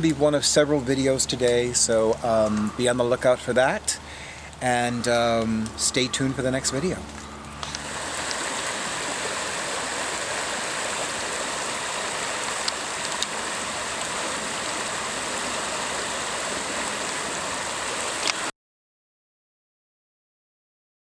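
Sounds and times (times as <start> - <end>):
stream rushing: 7.6 - 18.5.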